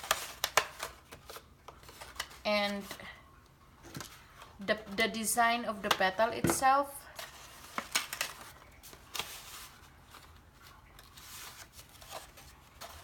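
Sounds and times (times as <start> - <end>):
paper rustling and crinkling: 0.0 - 3.1, 7.1 - 13.0
sharp paper crackles: 7.2 - 13.0.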